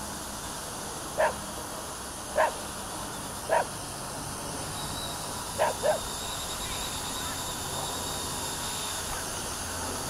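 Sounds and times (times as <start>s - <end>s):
dog barking: 2.4s - 2.6s, 5.6s - 6.0s.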